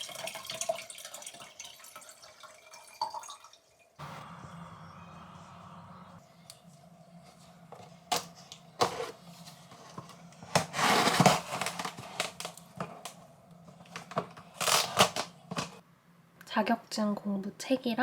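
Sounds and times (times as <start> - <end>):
rustling and crinkling: 7.2 - 15.8.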